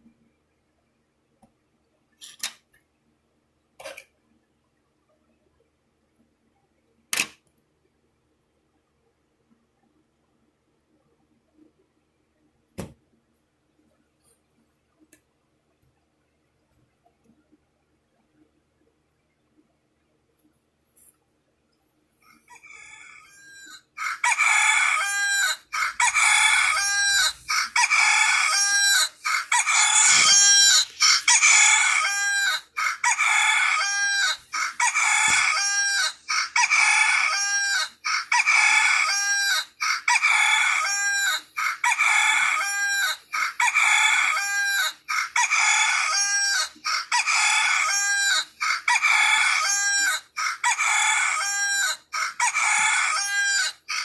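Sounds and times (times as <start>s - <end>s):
rooster crow alarm tone: 22.8s - 54.0s.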